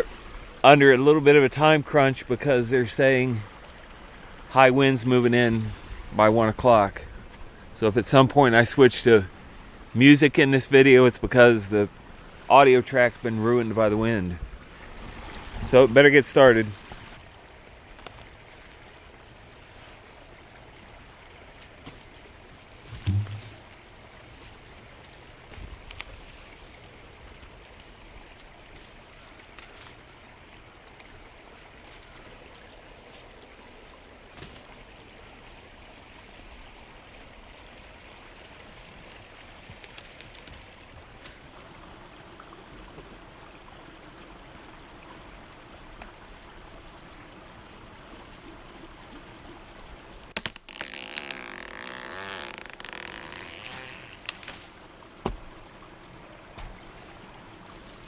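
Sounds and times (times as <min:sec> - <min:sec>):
creek water running: 0:00.0 - 0:58.0
sharp knocks: 0:22.9 - 0:23.6.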